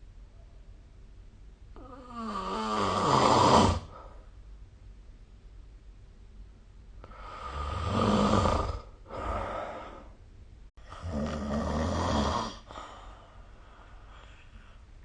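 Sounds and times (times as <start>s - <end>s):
person snoring: 1.8s - 4.1s, 7.0s - 10.1s, 10.8s - 13.2s
soft breath out: 12.7s - 15.0s.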